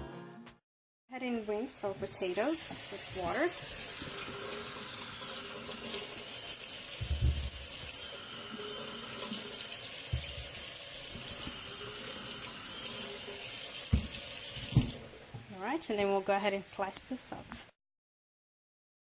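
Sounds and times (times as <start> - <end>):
tap running into sink: 2.6 - 15.5
potatoes knocking in sink: 6.9 - 7.8, 10.1 - 11.3, 13.9 - 15.5.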